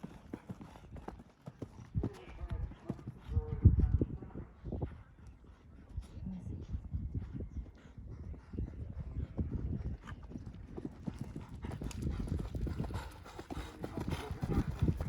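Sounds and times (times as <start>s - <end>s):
horse hoofbeats: 0.0s - 3.5s, 7.2s - 15.0s.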